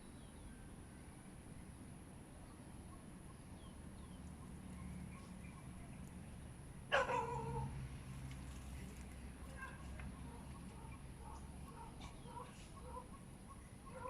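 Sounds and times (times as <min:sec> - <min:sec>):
faint background hum: 0:00.0 - 0:14.0
dog bark: 0:06.9 - 0:07.7, 0:09.5 - 0:13.2.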